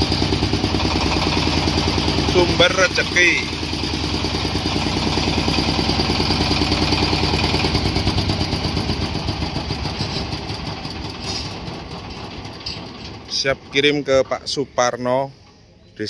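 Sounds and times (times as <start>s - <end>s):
engine running with even pulse: 0.0s - 13.2s.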